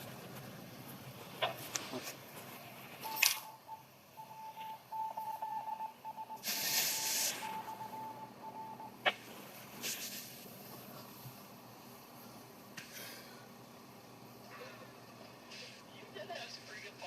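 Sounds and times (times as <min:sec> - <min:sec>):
beeping tone over radio: 0:03.0 - 0:09.0
burst of radio static: 0:06.4 - 0:07.8.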